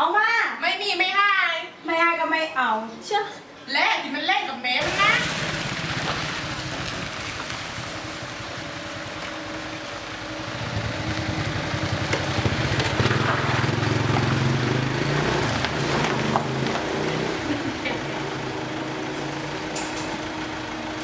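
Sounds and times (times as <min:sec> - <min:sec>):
vehicle engine humming: 0:04.8 - 0:21.0.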